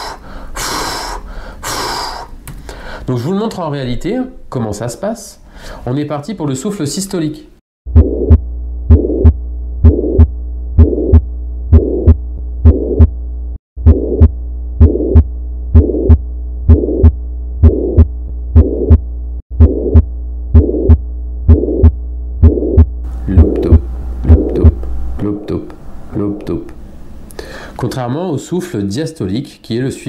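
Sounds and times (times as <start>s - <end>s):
heartbeat with whooshing murmur: 7.9s - 13.2s, 13.8s - 24.9s
steady low hum: 7.9s - 28.7s.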